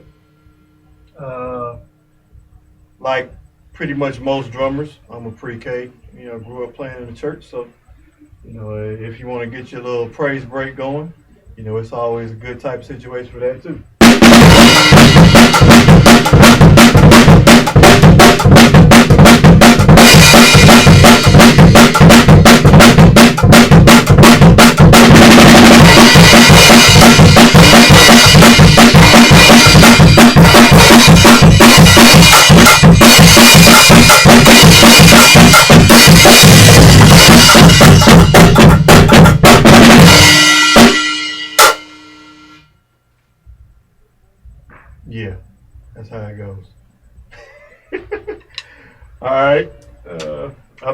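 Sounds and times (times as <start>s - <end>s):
drum kit playing fast groove: 14.0s - 42.3s
cymbals ringing: 39.9s - 43.0s.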